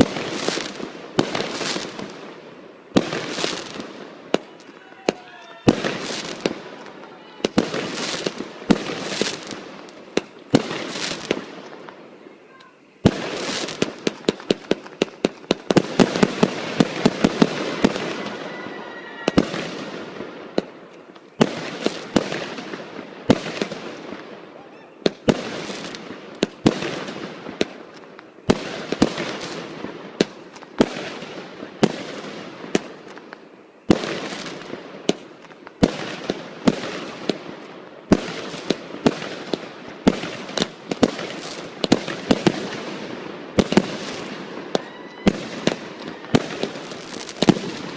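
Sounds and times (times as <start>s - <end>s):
fireworks bangs and crackling: 0.0s - 47.9s.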